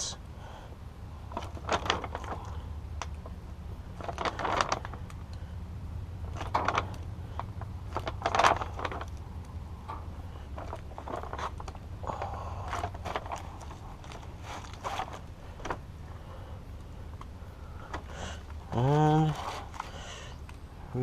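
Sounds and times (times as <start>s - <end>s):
steady low hum: 0.0s - 21.0s
foil sheet crackling and rustling: 1.3s - 2.6s, 3.9s - 5.1s, 6.2s - 9.3s, 10.5s - 15.8s.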